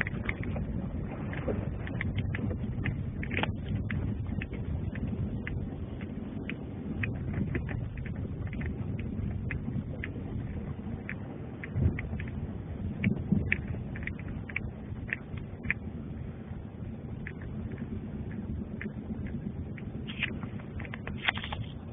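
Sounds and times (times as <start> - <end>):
light clicks and ticks: 0.0 - 21.9
wind rumble on microphone: 0.0 - 21.9.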